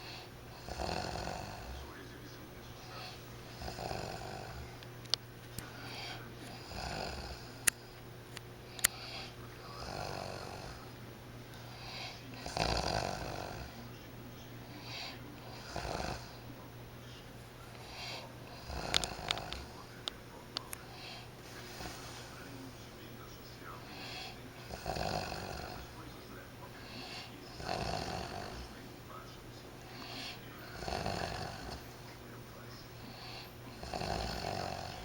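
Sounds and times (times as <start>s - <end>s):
man snoring: 0.0s - 2.0s, 2.9s - 4.7s, 5.8s - 7.7s, 8.8s - 10.9s, 11.7s - 13.9s, 14.8s - 16.4s, 17.8s - 19.9s, 23.8s - 26.0s, 26.8s - 28.8s, 29.9s - 31.9s, 33.0s - 35.0s.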